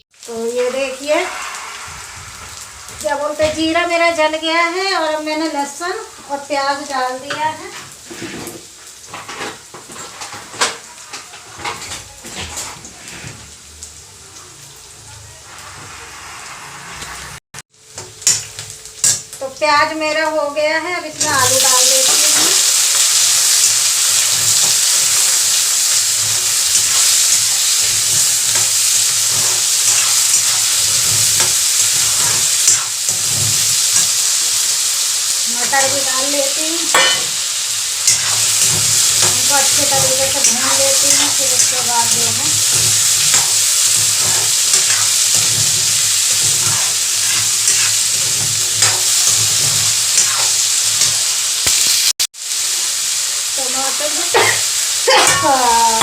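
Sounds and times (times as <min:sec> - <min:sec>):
hot oil sizzling: 0:00.0 - 0:56.0
spoon scraping pan: 0:21.2 - 0:34.8, 0:35.6 - 0:52.0.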